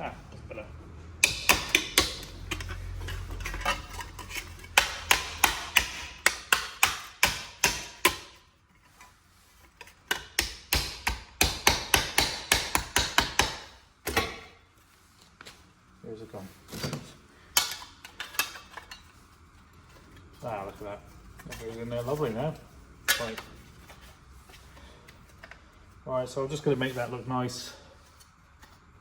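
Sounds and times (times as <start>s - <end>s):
hammer on sheet metal: 1.2s - 2.3s, 10.4s - 14.4s.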